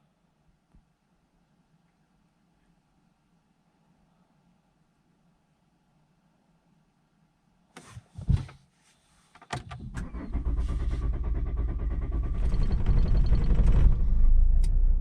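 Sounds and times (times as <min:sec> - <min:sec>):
knock and thump: 0:08.2 - 0:08.6
diesel engine starter cranking: 0:09.6 - 0:15.0.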